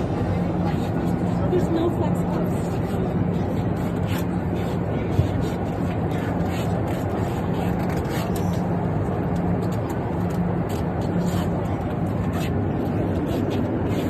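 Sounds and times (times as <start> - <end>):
low hum: 0.0 - 5.1
airliner cabin drone: 0.0 - 14.0.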